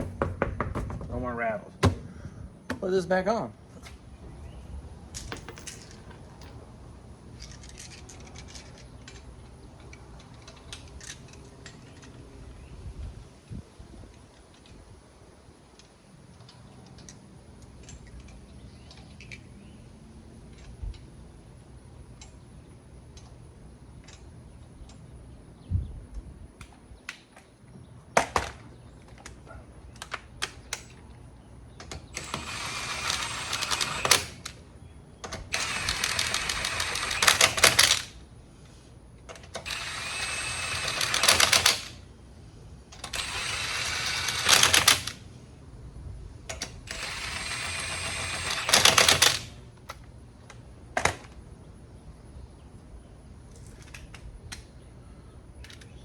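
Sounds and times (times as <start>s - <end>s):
impact wrench hammering: 0.0s - 1.1s, 1.8s - 2.1s.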